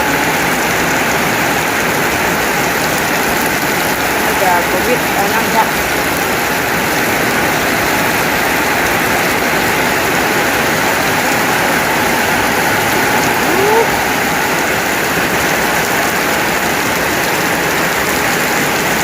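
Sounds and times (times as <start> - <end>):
heavy rain pouring: 0.0 - 19.0.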